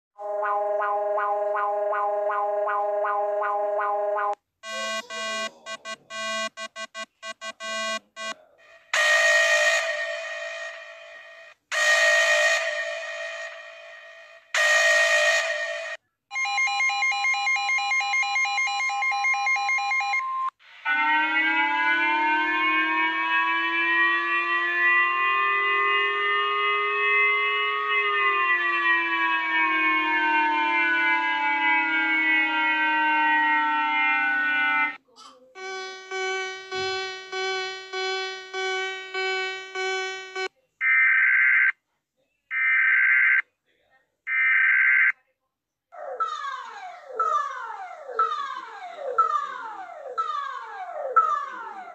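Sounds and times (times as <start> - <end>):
fast pulsing electronic beeping: 0.2 - 8.4, 35.6 - 40.5
harsh alert tone: 0.2 - 16.7, 35.6 - 40.5
multi-pitch siren wail: 0.2 - 35.0, 35.6 - 41.8, 45.9 - 51.9.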